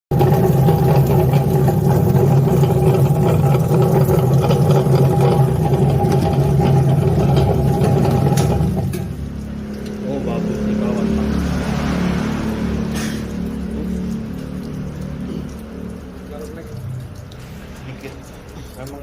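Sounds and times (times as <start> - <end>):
potato peeling machine motor humming: 0.1 - 9.0.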